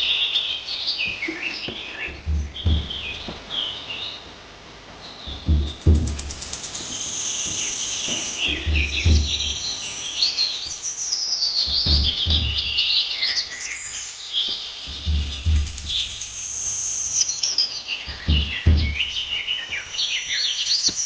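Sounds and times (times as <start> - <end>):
birds chirping: 0.0 - 21.0
low dull thumps: 1.1 - 10.2, 11.6 - 12.9, 14.9 - 16.8, 18.1 - 19.4.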